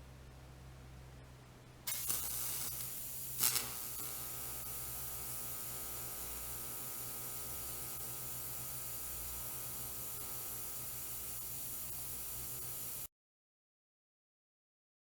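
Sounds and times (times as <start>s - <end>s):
faint electrical buzz: 0.0s - 13.1s
welding arc hissing: 1.9s - 13.1s.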